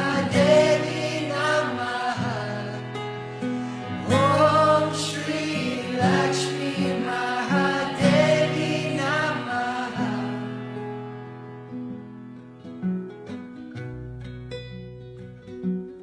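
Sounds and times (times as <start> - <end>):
person singing devotional song: 0.0 - 3.0, 3.6 - 10.8
sustained instrumental backing: 0.0 - 12.0.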